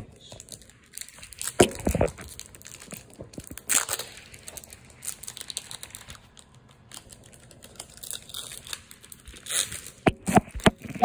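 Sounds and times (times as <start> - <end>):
foil wrapper crinkling: 0.3 - 11.0.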